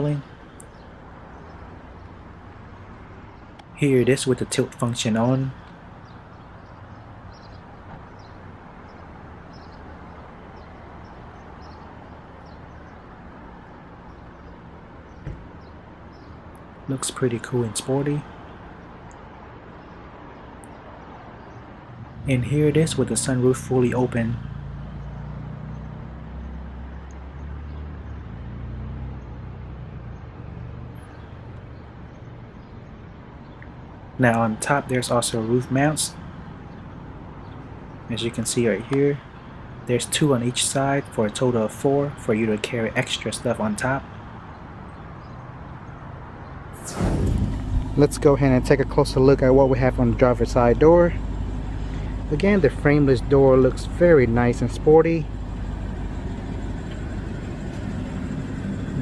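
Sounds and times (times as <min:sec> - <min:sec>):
small birds chirping: 0:00.0 - 0:27.9, 0:30.1 - 0:48.4
low rumble of vehicle noise: 0:00.0 - 0:59.0.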